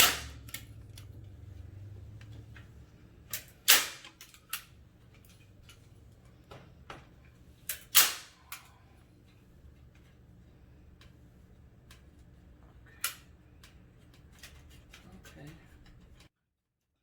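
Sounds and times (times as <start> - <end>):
staple gun snapping: 7.7 - 8.3.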